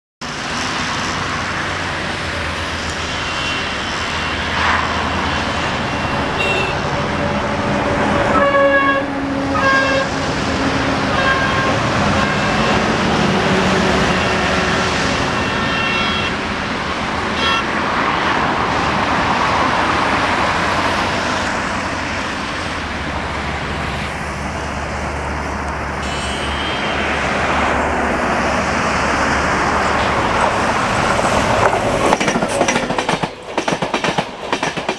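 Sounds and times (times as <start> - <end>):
rumble of vehicles: 0.2 - 34.9
short horn toots: 5.9 - 6.8, 26.0 - 27.0.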